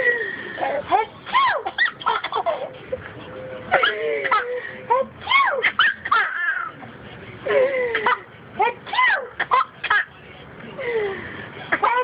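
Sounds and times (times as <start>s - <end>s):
baby giggling: 0.6s - 2.8s, 3.8s - 6.8s.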